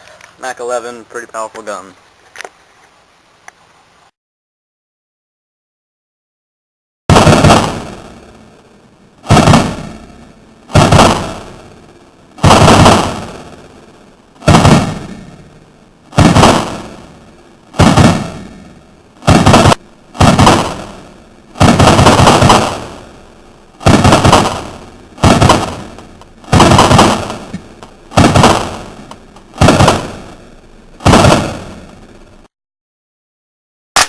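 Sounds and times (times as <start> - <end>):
airsoft submachine gun firing bursts: 7.1 - 7.9, 9.3 - 9.7, 10.7 - 11.4, 12.4 - 13.3, 14.4 - 15.0, 16.1 - 16.9, 17.8 - 18.4, 19.2 - 20.9, 21.6 - 23.0, 23.8 - 29.0, 29.6 - 30.2, 31.0 - 31.8.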